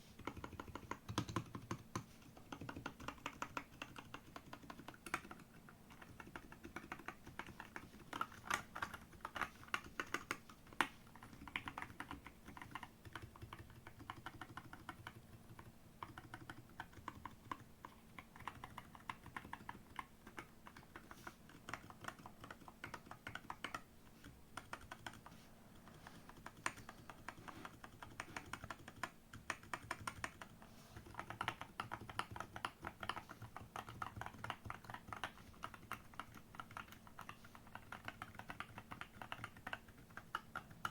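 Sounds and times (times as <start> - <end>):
mechanical keyboard typing: 0.2 - 23.9, 24.6 - 40.9.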